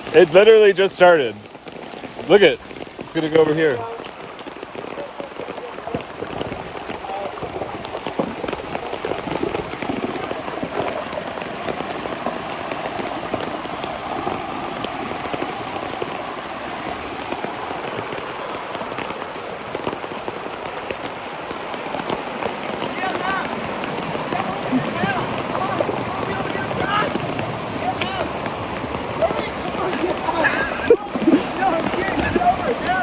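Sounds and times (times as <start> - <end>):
torrential rain pouring: 0.0 - 33.0.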